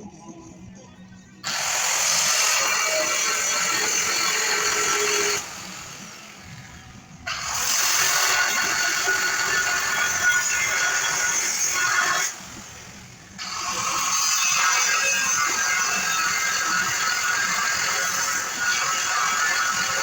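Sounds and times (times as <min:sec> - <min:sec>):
angle grinder grinding steel: 0:01.4 - 0:20.0.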